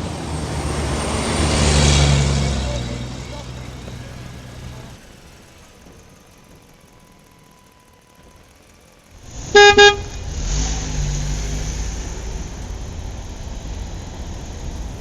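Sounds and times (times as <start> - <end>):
vehicle motor rumbling: 0.0 - 15.0
horn beeps: 9.3 - 10.5.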